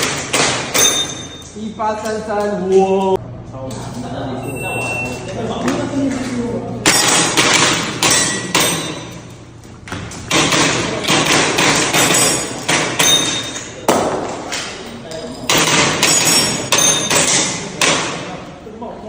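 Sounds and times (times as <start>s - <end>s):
metallic ringing of steel targets: 0.7s - 1.6s, 6.8s - 9.4s, 11.9s - 13.8s, 15.3s - 17.6s.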